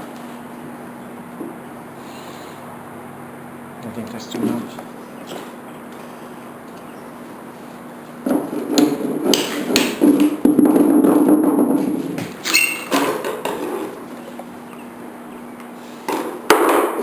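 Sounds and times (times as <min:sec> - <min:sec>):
hammer striking wood: 0:08.3 - 0:10.8.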